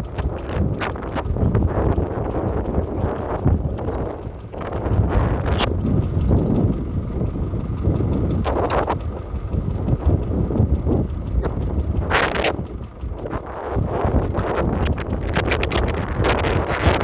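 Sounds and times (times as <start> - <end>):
tractor engine running: 0.0 - 17.0
wind buffeting microphone: 0.0 - 17.0.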